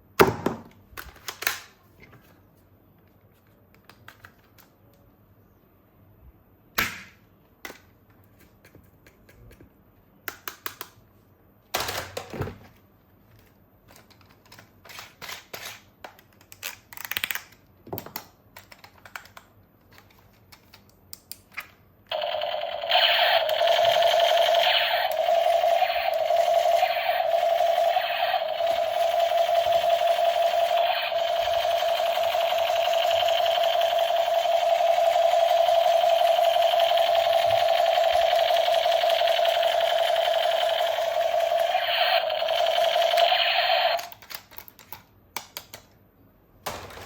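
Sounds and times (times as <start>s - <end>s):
plastic toy pieces clicking: 13.9s - 21.7s, 44.0s - 45.9s
toy gun buzzing: 22.1s - 44.2s.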